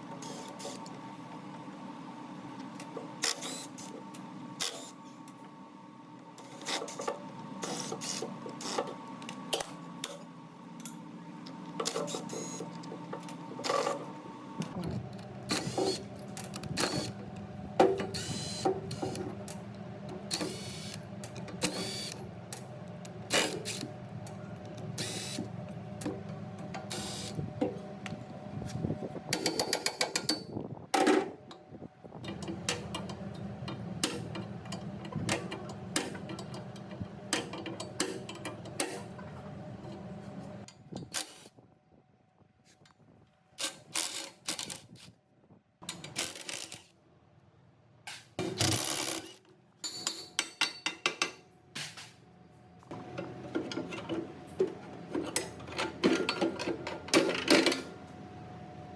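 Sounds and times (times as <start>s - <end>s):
hand tools clinking on metal: 49.8s - 51.4s.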